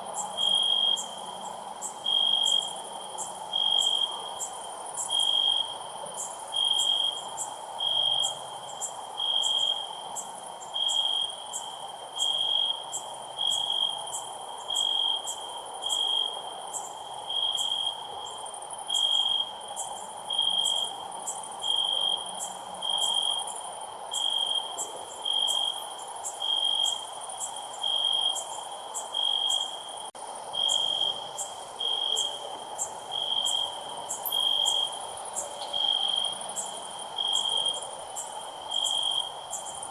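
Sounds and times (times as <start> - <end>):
cricket chirping: 0.0 - 39.9.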